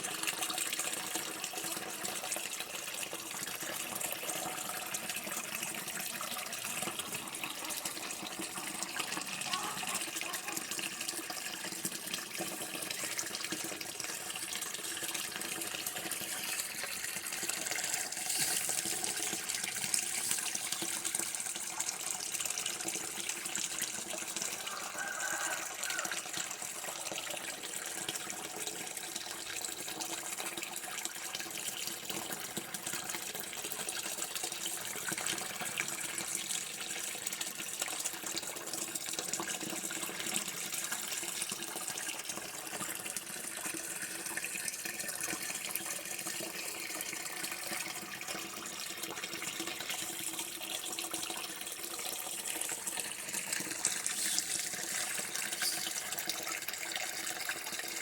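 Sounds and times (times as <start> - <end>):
running water stream: 0.0 - 58.0.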